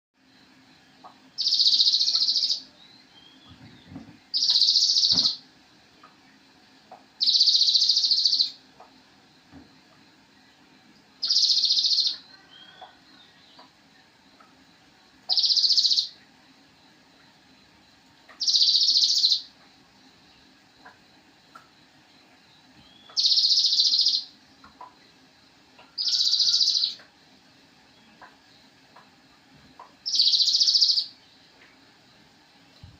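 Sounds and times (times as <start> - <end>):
bird singing high-pitched trill: 0.9 - 5.4, 7.2 - 8.6, 11.2 - 13.7, 15.2 - 16.2, 18.3 - 19.6, 22.5 - 24.4, 25.8 - 27.1, 30.0 - 31.4.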